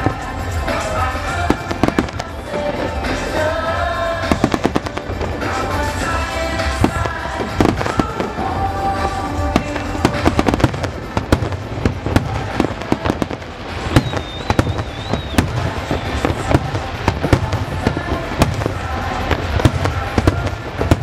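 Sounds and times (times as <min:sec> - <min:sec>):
fireworks bangs and crackles: 0:00.0 - 0:21.0
high thin whistle: 0:14.0 - 0:16.4.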